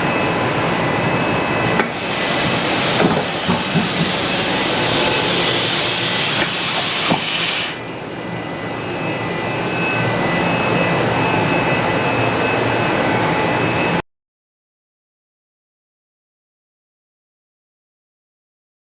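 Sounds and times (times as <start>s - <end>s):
machine mechanical hum: 0.0s - 14.0s
loud hiss: 1.8s - 7.9s.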